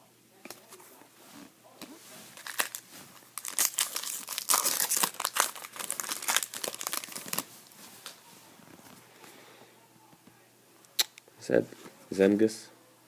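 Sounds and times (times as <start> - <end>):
wrapper crackling and crinkling: 2.2 - 8.2.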